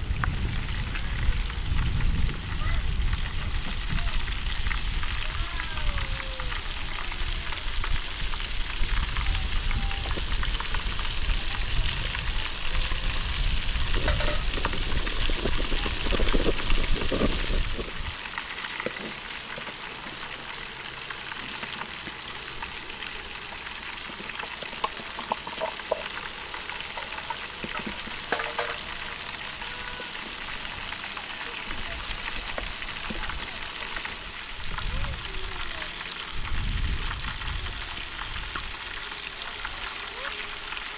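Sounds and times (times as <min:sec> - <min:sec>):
low rumble: 0:00.0 - 0:05.4
chicken sizzling in hot oil: 0:00.0 - 0:40.9.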